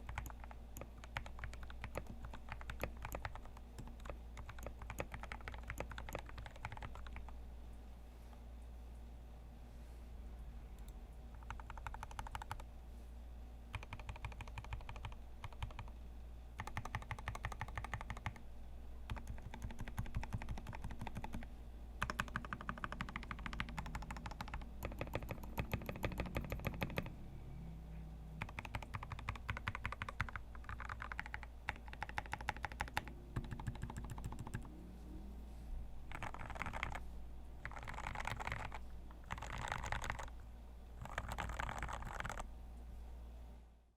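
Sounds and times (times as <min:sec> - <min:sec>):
mechanical keyboard typing: 0:00.0 - 0:07.4, 0:11.3 - 0:12.6, 0:13.7 - 0:16.0, 0:16.6 - 0:18.4, 0:19.1 - 0:27.1, 0:28.4 - 0:34.7, 0:36.1 - 0:37.0, 0:37.6 - 0:40.4, 0:41.0 - 0:42.5.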